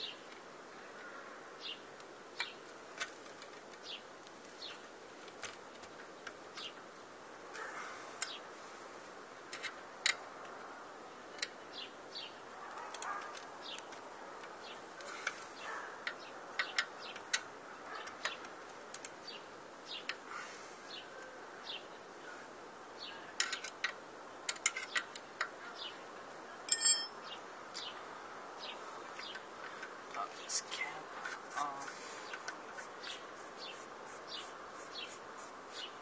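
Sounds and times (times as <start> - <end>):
hand tools clicking on metal parts: 26.7 - 27.4
ringing metal clink: 26.7 - 27.4.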